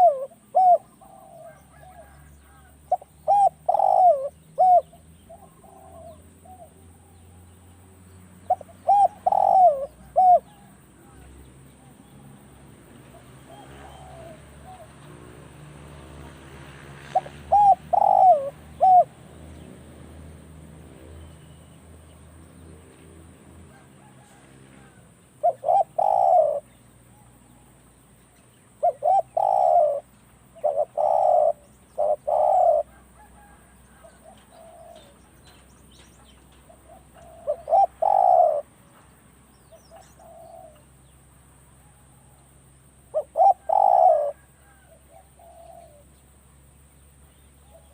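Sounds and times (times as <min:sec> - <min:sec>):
doves cooing: 0:00.0 - 0:07.7, 0:08.4 - 0:20.2, 0:23.6 - 0:27.8, 0:28.7 - 0:38.8, 0:39.6 - 0:40.9, 0:41.9 - 0:46.2.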